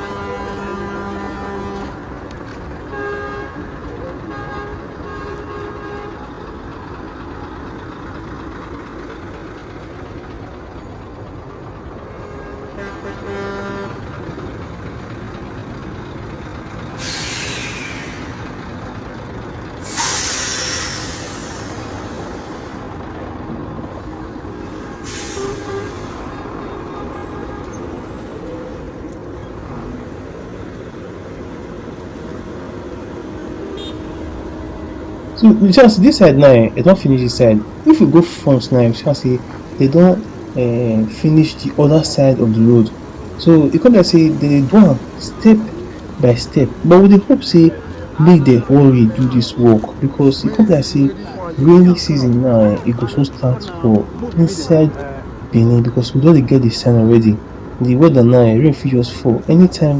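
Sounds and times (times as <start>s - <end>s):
car horns tooting: 0.0s - 2.1s, 2.9s - 6.4s, 12.0s - 14.2s, 24.7s - 28.3s, 33.7s - 34.4s
heavy road traffic: 0.0s - 59.9s
short loud hisses: 17.0s - 18.5s, 19.8s - 22.8s, 25.0s - 26.3s.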